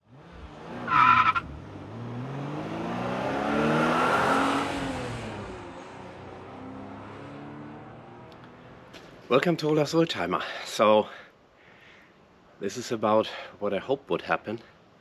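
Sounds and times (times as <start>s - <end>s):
car engine revving: 0.0s - 9.0s.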